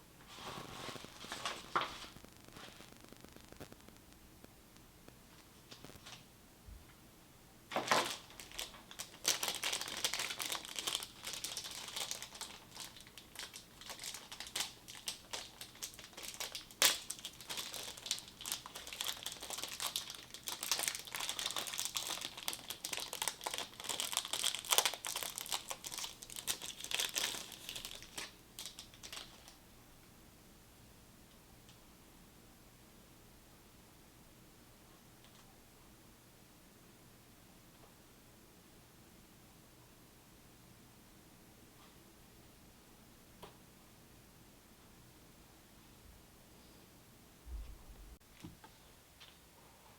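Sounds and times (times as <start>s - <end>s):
plastic packaging crinkling: 0.3s - 4.0s, 7.7s - 29.6s.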